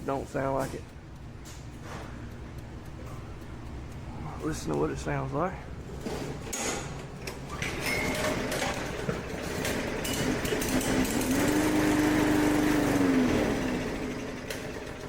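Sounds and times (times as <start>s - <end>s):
mower engine sputtering: 7.2s - 15.0s.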